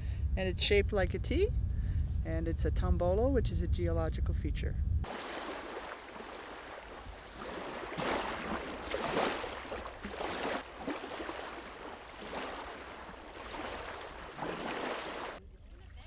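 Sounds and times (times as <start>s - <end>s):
small waves washing ashore: 5.0s - 15.4s.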